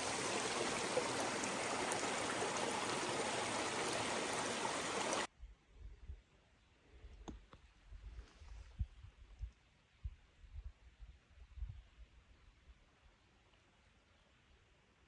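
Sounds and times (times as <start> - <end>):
brook babbling over rocks: 0.0 - 5.3.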